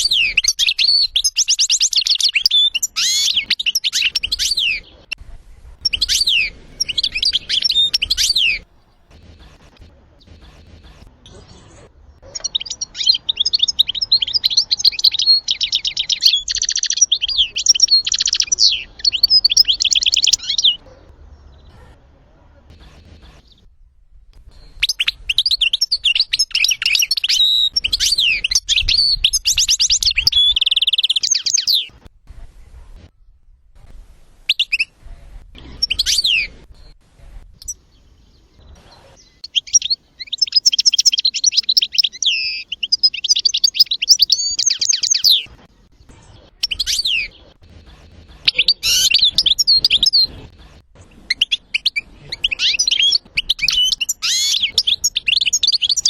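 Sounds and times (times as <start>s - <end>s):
songbird twittering song: 0.0s - 9.2s, 10.2s - 21.8s, 24.4s - 32.0s, 37.6s - 47.5s, 51.2s - 56.0s.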